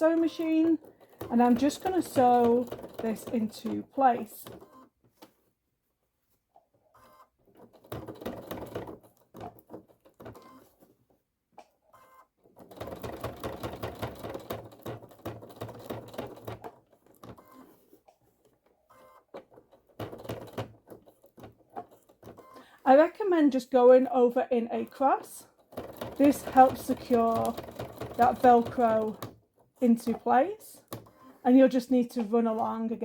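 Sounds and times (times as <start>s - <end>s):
sewing machine stitching: 0.0s - 4.8s, 7.0s - 10.8s, 12.4s - 17.8s, 18.9s - 22.6s, 24.7s - 33.0s.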